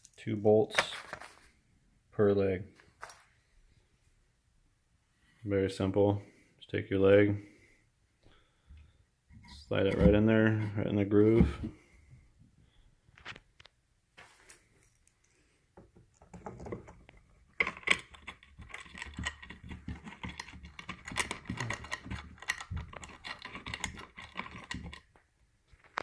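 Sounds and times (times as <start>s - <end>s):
metal bolts clicking and rattling: 16.2s - 25.1s.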